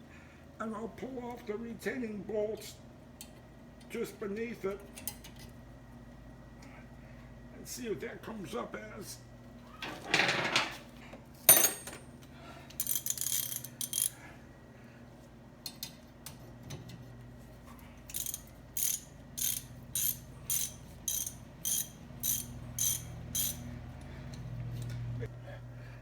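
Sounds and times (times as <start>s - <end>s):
ratchet wrench clicking: 12.8s - 14.2s, 18.1s - 23.7s.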